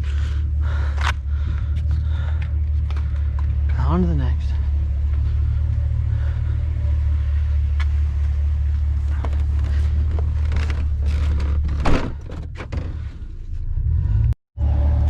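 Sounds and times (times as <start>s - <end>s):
vehicle rumble: 0.0s - 15.0s.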